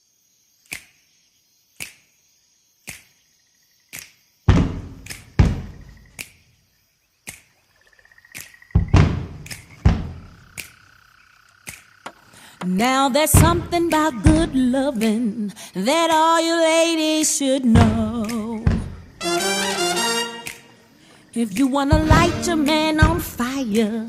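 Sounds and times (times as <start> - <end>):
deep booming hits: 4.5 - 5.9, 8.8 - 10.4, 22.0 - 23.4.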